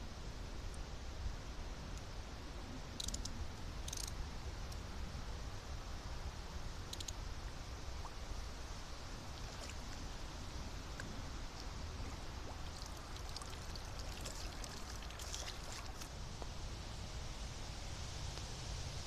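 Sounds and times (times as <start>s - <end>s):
water rushing: 7.9s - 16.3s.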